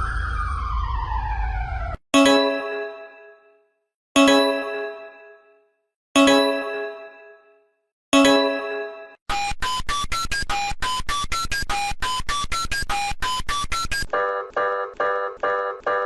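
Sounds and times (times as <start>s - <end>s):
wailing siren-like tone: 0.0s - 2.0s
bell-like chime: 2.2s - 9.2s.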